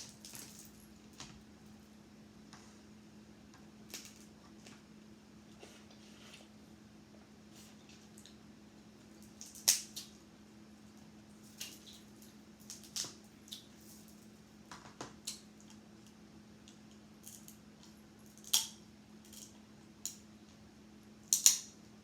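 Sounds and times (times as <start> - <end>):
faint steady hum: 0.0 - 22.0
crab shells cracking: 9.3 - 10.1, 17.2 - 20.2, 21.3 - 21.7.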